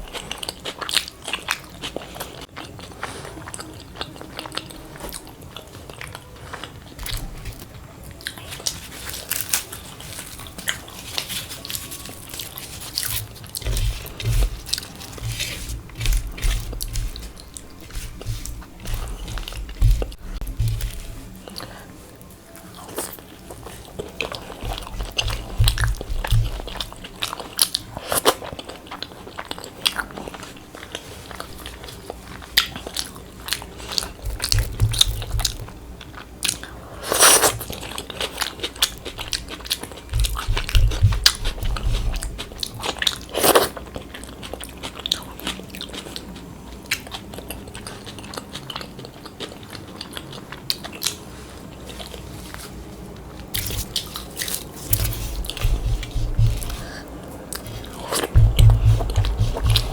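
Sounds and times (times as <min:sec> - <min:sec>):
crunchy chewing: 0:00.0 - 0:59.9
low thuds: 0:54.9 - 0:57.0, 0:57.7 - 0:59.9.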